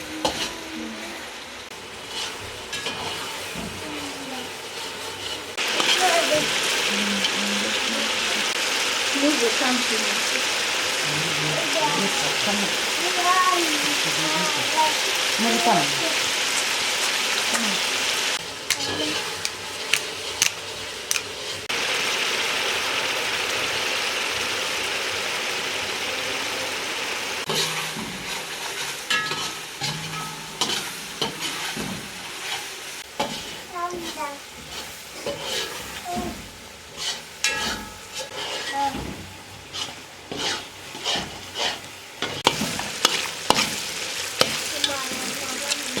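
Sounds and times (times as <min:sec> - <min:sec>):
food sizzling in hot oil: 0:00.0 - 0:46.0
utensil scraping a pot: 0:00.2 - 0:00.6, 0:01.8 - 0:07.8, 0:18.7 - 0:21.7, 0:27.4 - 0:46.0.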